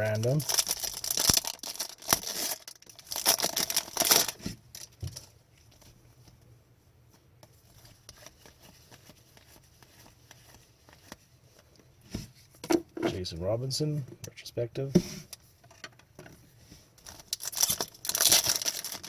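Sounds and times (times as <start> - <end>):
card pack wrapper crinkling: 0.0 - 4.9, 17.0 - 19.0.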